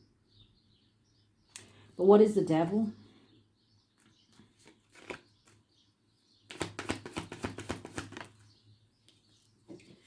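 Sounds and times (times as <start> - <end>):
cards being shuffled: 4.6 - 5.6, 6.5 - 8.4.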